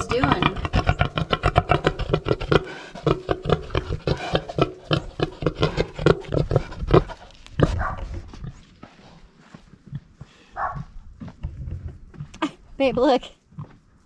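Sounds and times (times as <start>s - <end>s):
pigs grunting: 0.0s - 8.7s.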